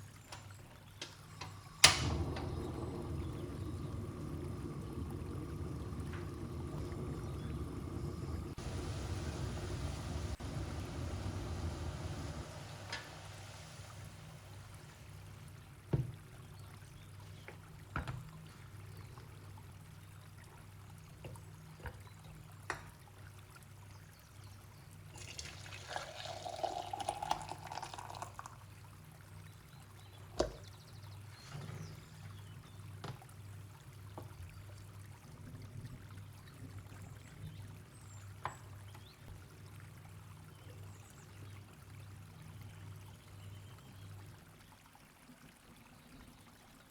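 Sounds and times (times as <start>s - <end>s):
steady low hum: 1.3s - 15.7s
liquid poured into container: 25.1s - 28.8s.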